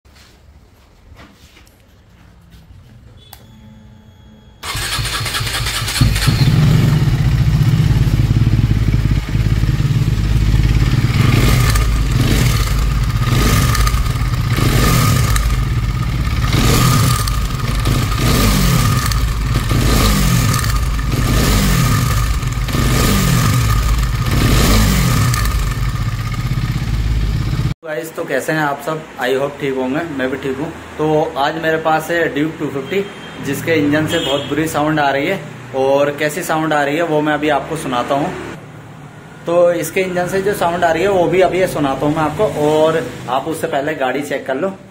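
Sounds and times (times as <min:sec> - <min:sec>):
motorcycle engine revving: 0:04.6 - 0:27.8.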